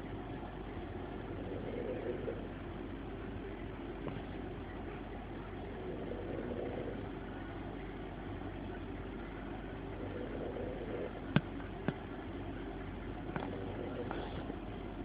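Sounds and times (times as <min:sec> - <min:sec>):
man snoring: 0:01.3 - 0:02.5, 0:05.8 - 0:07.0, 0:10.0 - 0:11.2.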